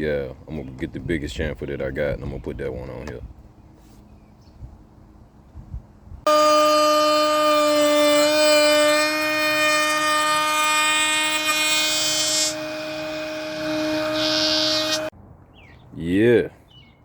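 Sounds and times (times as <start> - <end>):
electric wood router whining: 6.3 - 15.1.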